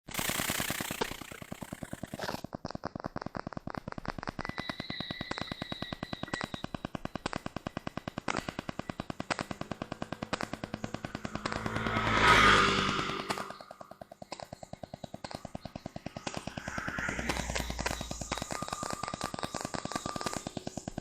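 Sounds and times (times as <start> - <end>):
rapid clicking of coasting motorcycle: 0.0 - 21.0.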